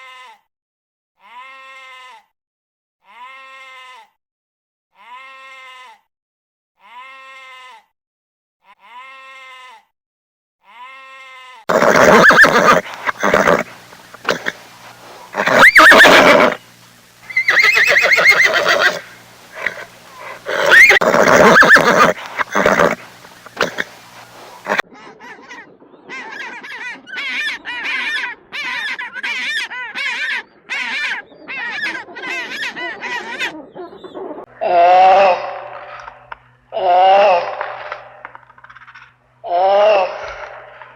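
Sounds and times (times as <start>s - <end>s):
horse neighing: 11.7s - 24.8s
short repeated bird calls: 11.7s - 24.8s.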